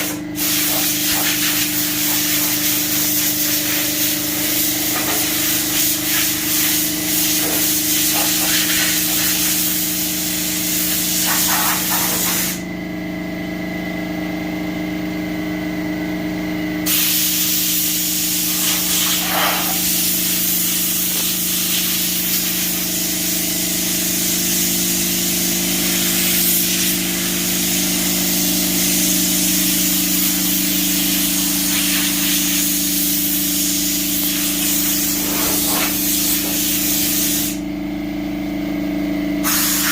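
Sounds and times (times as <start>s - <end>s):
compressed air hissing from blow gun: 0.0s - 12.6s, 16.9s - 37.6s, 39.4s - 39.9s
motor hum: 0.0s - 16.8s.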